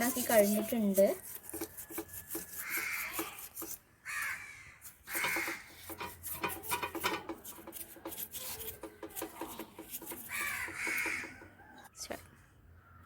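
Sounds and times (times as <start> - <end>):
brush scrubbing metal: 0.0 - 11.6
crows cawing: 4.0 - 5.8, 10.2 - 11.5.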